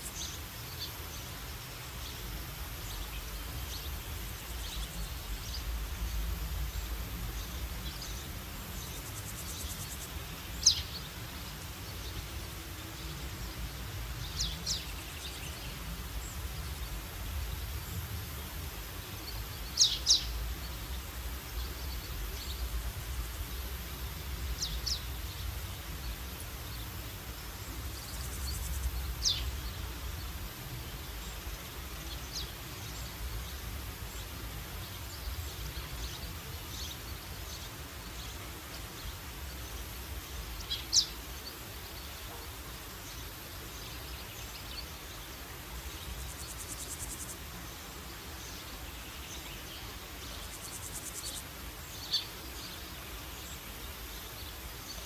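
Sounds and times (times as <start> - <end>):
faint high insect hum: 0.0 - 55.0
high downward-sweeping bird calls: 19.2 - 20.9.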